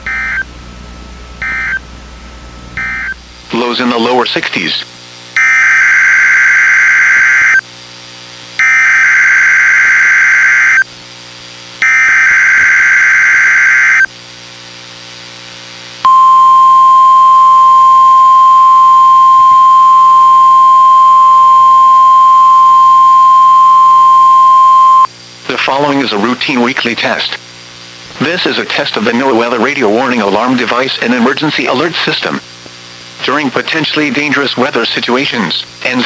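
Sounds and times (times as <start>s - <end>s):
steady warning alarm tone: 0.0s - 3.5s
warbling data tone bursts: 2.8s - 3.4s.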